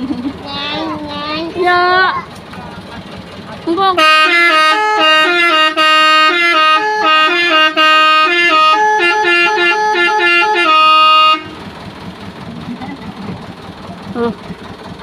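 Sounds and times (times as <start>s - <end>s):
low background rumble: 0.0s - 15.0s
bus musical horn playing tune: 3.9s - 11.8s.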